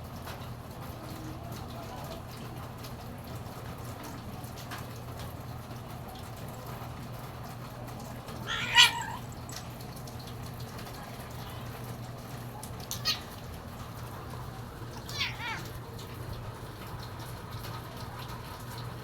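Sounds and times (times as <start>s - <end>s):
cat meowing: 8.3s - 9.4s, 12.8s - 16.3s.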